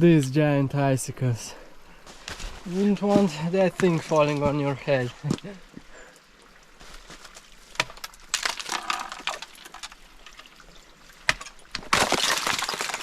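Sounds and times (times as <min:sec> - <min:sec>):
ice cracking and clinking: 0:07.3 - 0:13.0.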